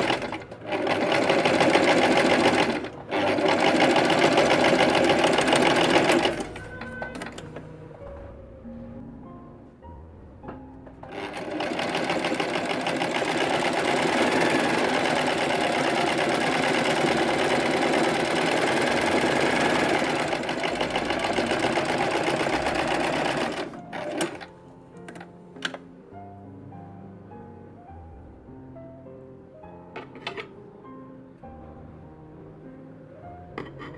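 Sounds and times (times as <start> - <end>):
sewing machine stitching: 0.0 - 7.4, 11.0 - 24.5.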